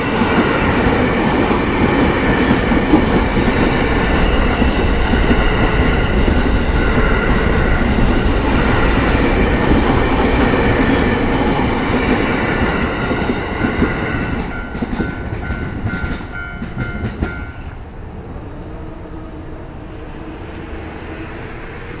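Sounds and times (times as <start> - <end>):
train wheels clacking over rails: 0.0 - 17.8
level crossing warning bell: 3.4 - 10.5, 12.6 - 17.7.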